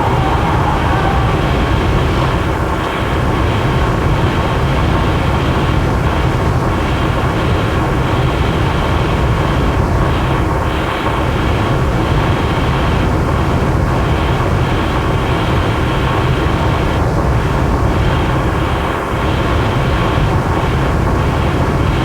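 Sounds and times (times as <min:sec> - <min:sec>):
dense rumbling harsh noise: 0:00.0 - 0:04.3.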